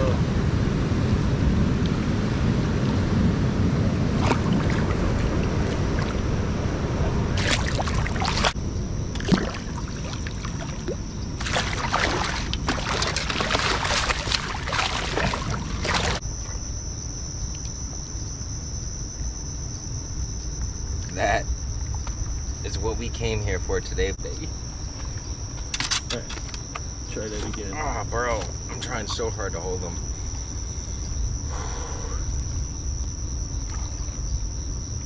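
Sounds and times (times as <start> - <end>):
crickets chirping: 0.0 - 35.0
fish splashing in water: 4.1 - 6.4, 7.3 - 16.2.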